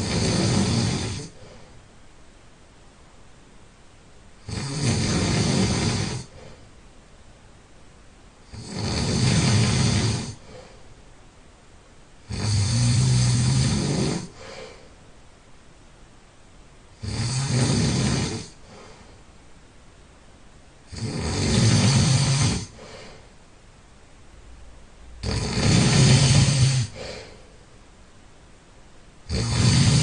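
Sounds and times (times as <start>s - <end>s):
person snoring: 0.0s - 1.7s, 4.4s - 6.6s, 8.4s - 10.8s, 12.3s - 14.9s, 17.0s - 19.2s, 20.9s - 23.2s, 25.2s - 27.5s, 29.2s - 30.0s
quiet breathing: 0.0s - 2.2s, 4.5s - 7.0s, 8.5s - 15.3s, 17.2s - 19.6s, 21.4s - 23.6s, 25.2s - 27.9s.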